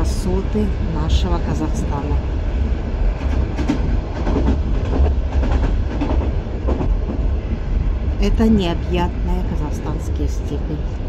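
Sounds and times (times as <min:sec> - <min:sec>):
train rumble: 0:00.0 - 0:11.0
wheels clacking over rail joints: 0:03.1 - 0:07.4.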